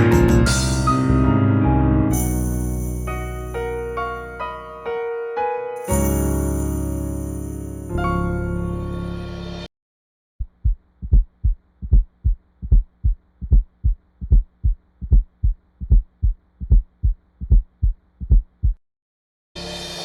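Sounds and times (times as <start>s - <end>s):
heartbeat thuds: 10.4s - 18.8s.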